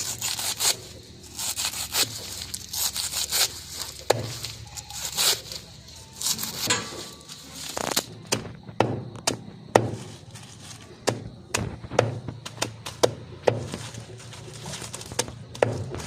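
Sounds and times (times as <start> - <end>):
sharp knocks: 8.3 - 10.1.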